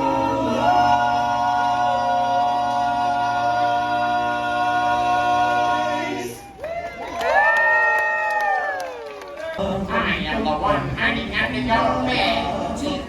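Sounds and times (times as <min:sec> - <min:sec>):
quartet singing in close harmony: 0:00.0 - 0:06.5, 0:09.6 - 0:13.0.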